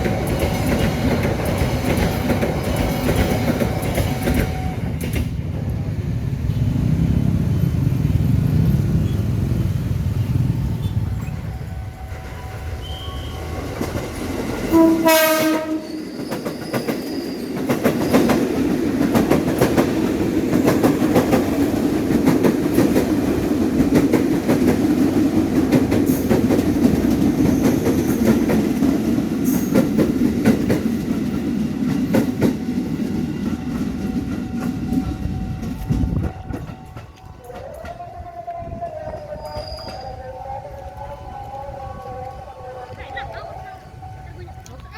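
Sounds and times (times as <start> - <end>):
wheels clacking over rail joints: 0.0 - 5.8, 11.1 - 38.1
train cars rumbling: 0.0 - 44.9
train horn blast: 14.7 - 16.1.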